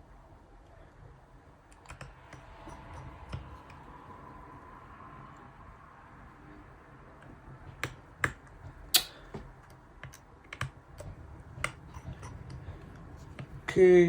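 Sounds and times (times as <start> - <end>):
small tools clicking and tapping: 1.7 - 3.9.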